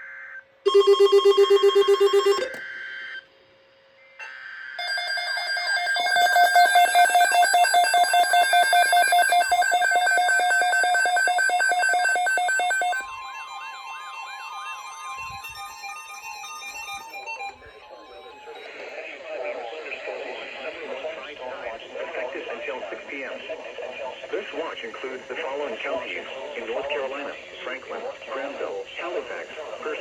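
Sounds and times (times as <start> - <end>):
pulsing ringing alert tone: 0.7 - 2.6, 4.8 - 17.0
rapidly pulsing beep: 0.7 - 3.1, 4.8 - 18.9.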